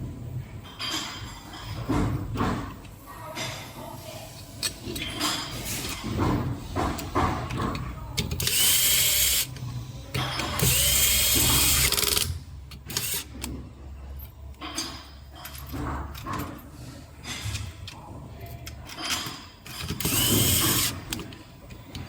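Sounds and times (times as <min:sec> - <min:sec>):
handling knocks and clicks: 0:04.5 - 0:22.0
power drill running: 0:08.4 - 0:09.5, 0:10.6 - 0:12.2, 0:20.0 - 0:21.0.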